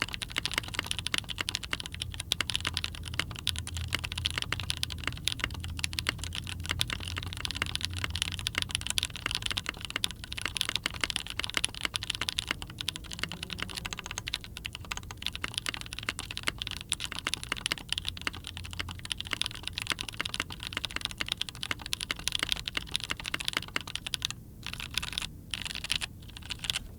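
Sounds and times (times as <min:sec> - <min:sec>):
typing on mechanical keyboard: 0:00.0 - 0:26.9.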